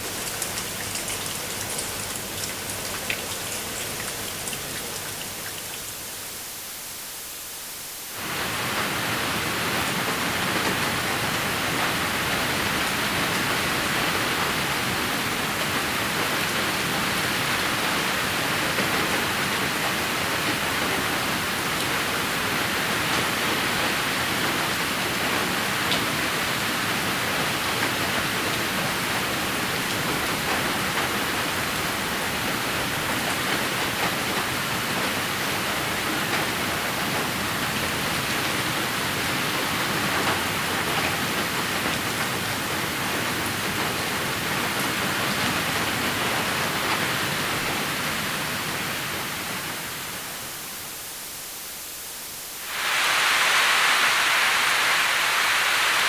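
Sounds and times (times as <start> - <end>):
faint raindrop ticks: 0.0 - 6.2
steady rain hiss: 0.0 - 56.0.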